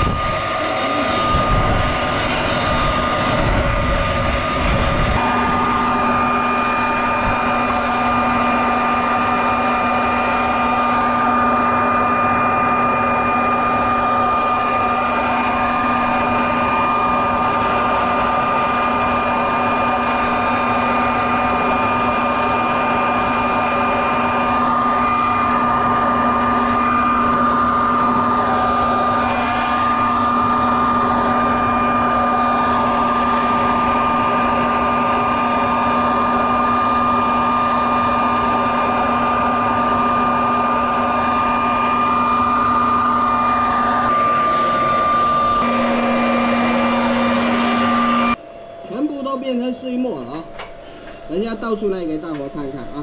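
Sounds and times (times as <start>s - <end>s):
vacuum motor whining: 0.0s - 49.0s.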